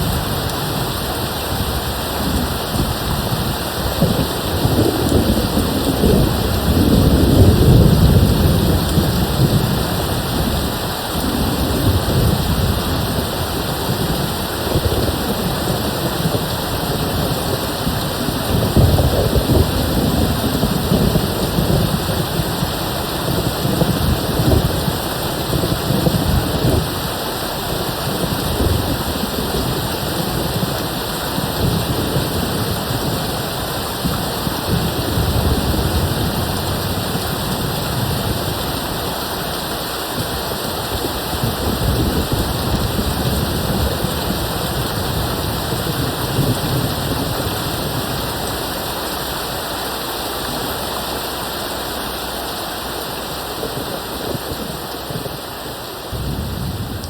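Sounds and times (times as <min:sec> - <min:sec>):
distant thunder rumbles: 0:00.0 - 0:39.4, 0:56.0 - 0:57.0
steady rain: 0:00.0 - 0:57.0.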